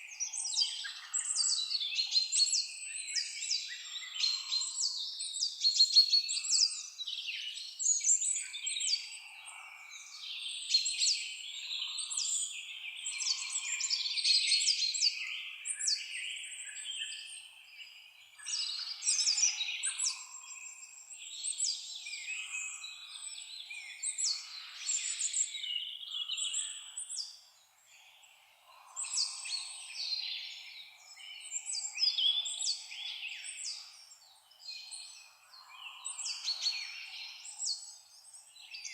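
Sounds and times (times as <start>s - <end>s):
songbirds singing and chirping: 0.0s - 38.9s.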